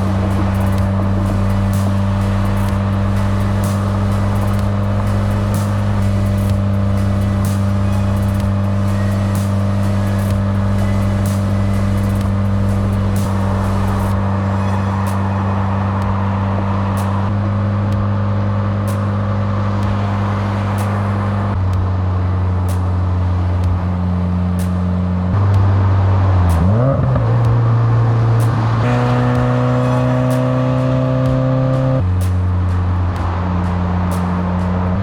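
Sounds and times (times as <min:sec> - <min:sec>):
rising sweep: 0:00.0 - 0:23.7
car engine and road noise: 0:00.0 - 0:35.0
music with steady pulse: 0:00.0 - 0:35.0.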